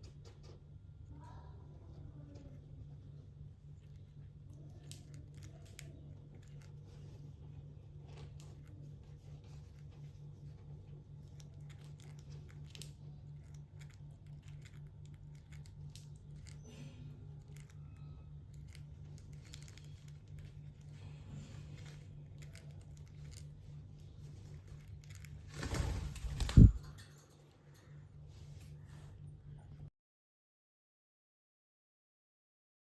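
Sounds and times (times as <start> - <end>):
steady low hum: 0.0 - 29.9
scratching and crinkling: 3.8 - 27.1.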